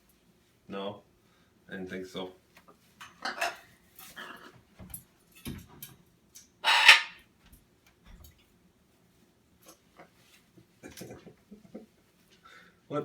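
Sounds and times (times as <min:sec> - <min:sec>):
macaw harsh calls: 0:06.6 - 0:07.2.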